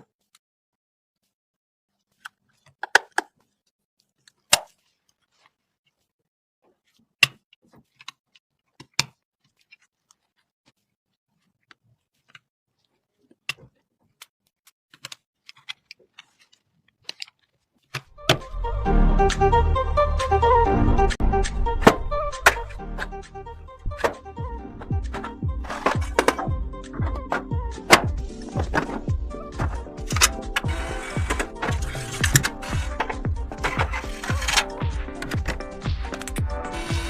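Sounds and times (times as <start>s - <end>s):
clicks and knocks of computer parts: 2.7s - 3.4s, 27.2s - 36.4s
music: 18.1s - 37.0s.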